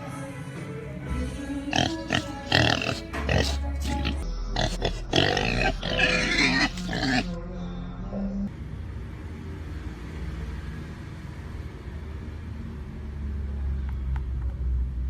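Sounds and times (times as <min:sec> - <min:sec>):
pig-like grunts and squeals: 0:01.7 - 0:07.3.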